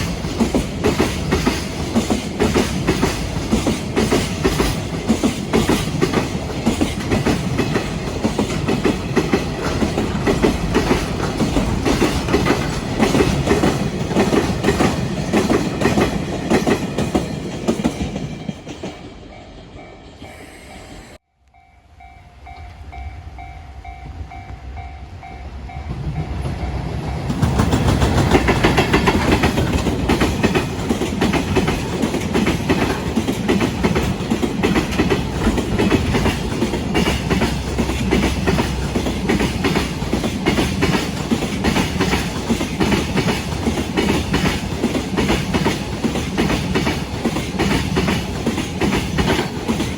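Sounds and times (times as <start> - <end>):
train wheels clattering over rail joints: 0.0 - 19.1, 25.9 - 49.9
level-crossing warning bell: 19.3 - 27.6.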